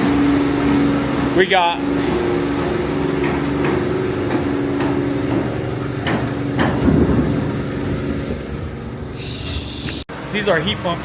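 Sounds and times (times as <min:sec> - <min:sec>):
steady mechanical hum: 0:00.0 - 0:11.0
sharp knocks: 0:03.2 - 0:07.5.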